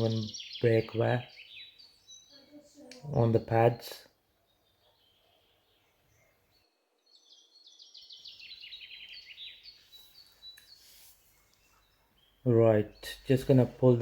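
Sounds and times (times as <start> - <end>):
songbird singing: 0.0 - 14.0.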